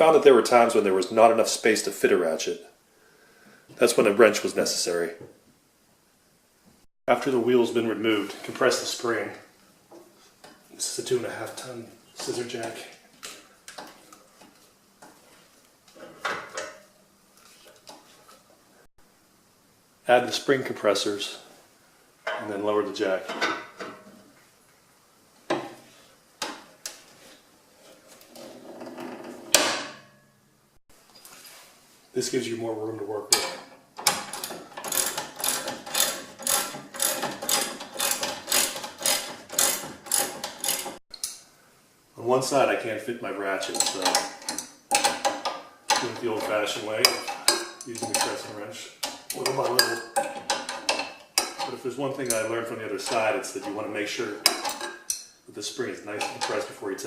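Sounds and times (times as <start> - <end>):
scissor jack metal clanks: 33.3 - 41.4
socket ratchet clicking: 34.1 - 41.4.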